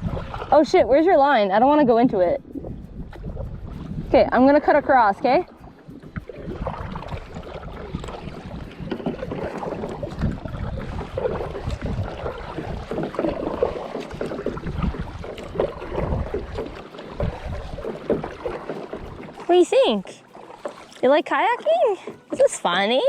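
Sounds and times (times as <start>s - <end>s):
paddle splashing in water: 0.0s - 23.0s.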